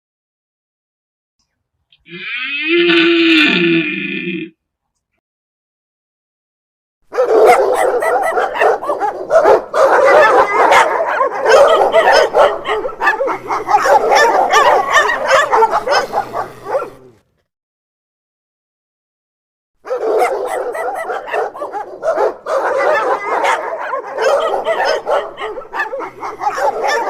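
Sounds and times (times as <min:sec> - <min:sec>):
dog barking rapidly: 0:07.1 - 0:17.2, 0:19.8 - 0:27.0.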